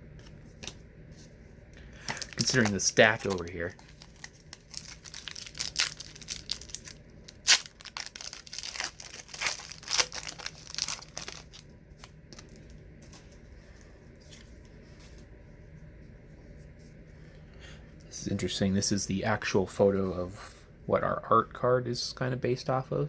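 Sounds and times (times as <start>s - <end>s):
foil wrapper tearing and crinkling: 2.1s - 11.6s.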